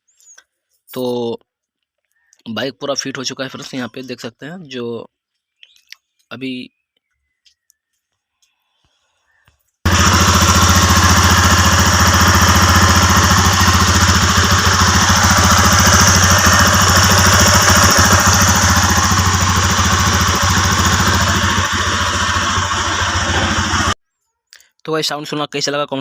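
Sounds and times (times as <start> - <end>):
motorcycle engine running: 9.9 - 24.0.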